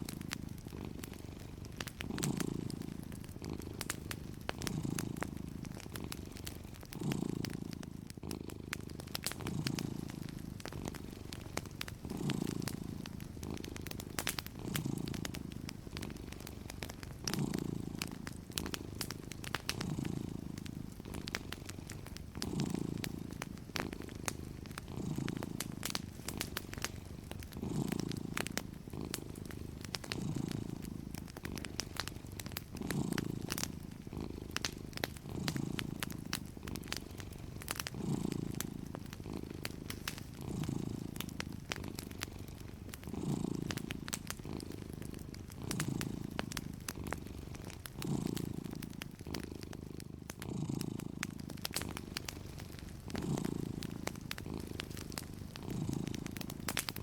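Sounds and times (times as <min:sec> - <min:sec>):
cat purring: 0:00.0 - 0:57.0
fireplace crackling: 0:00.0 - 0:57.0.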